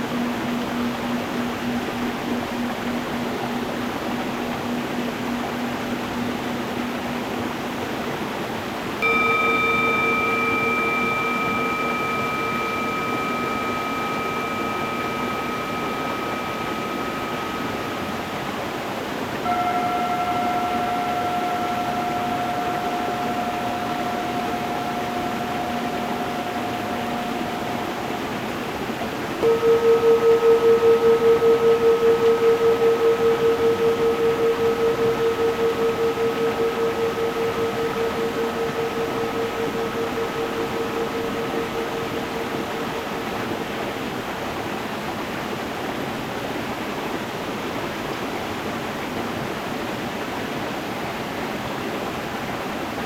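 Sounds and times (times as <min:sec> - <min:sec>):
singing bowls ringing: 0:00.0 - 0:45.9
stream rushing: 0:00.0 - 0:53.0.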